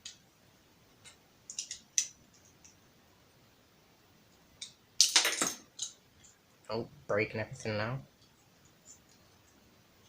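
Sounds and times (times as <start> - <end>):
plastic pieces clicking: 1.5 - 2.1.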